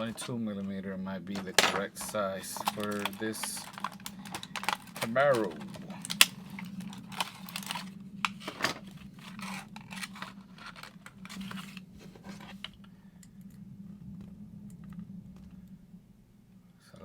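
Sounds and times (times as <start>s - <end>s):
steady low hum: 0.0s - 17.0s
plastic parts clicking: 1.3s - 8.8s
packaging rustling: 1.3s - 12.9s.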